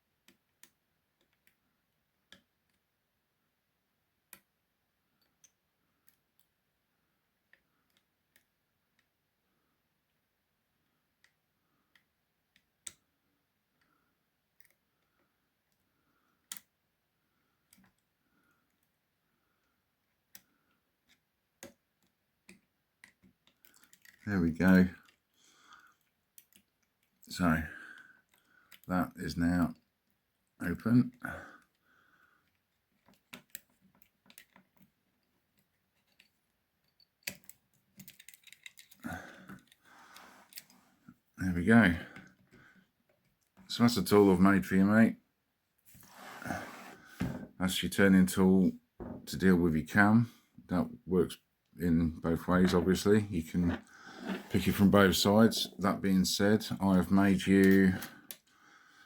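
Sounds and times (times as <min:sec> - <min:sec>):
metallic clicks of lock picks: 0:21.1 - 0:24.3, 0:32.4 - 0:39.8
metal clicks of lock picking: 0:35.6 - 0:39.8
rough handling noise: 0:52.3 - 0:56.0.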